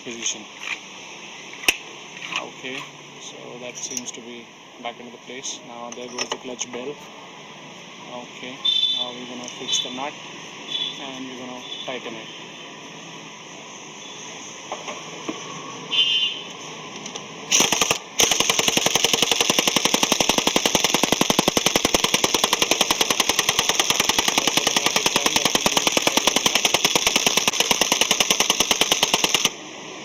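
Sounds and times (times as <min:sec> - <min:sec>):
impact wrench hammering: 0:17.5 - 0:29.6.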